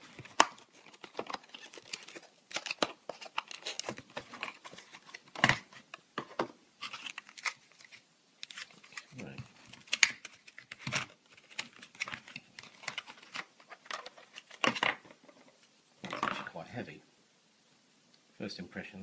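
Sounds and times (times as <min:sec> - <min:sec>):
packaging crinkling and tearing: 0:00.0 - 0:06.0, 0:06.8 - 0:15.1.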